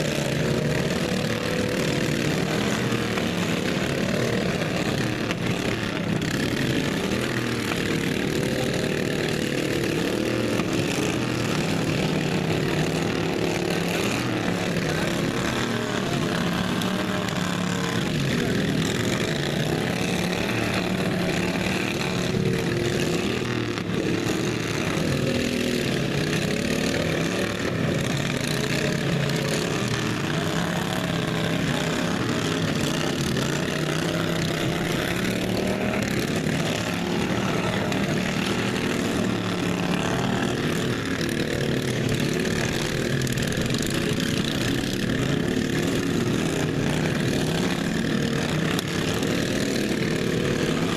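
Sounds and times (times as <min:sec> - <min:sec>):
racing lawn mower engines revving: 0:00.0 - 0:50.9.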